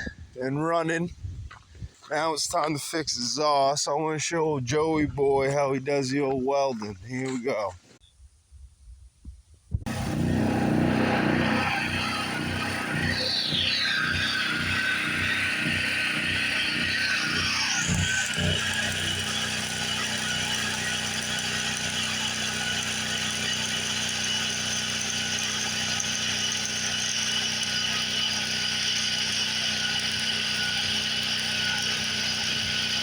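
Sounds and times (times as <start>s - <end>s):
generator low hum: 9.7s - 33.0s
welding arc crackling hiss: 9.9s - 33.0s.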